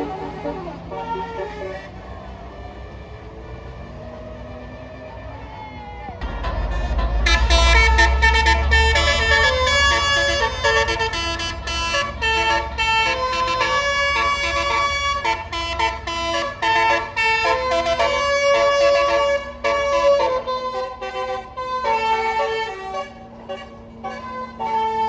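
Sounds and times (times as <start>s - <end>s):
bus engine rumble: 0.0s - 25.0s
musical air horn tune: 6.2s - 25.0s.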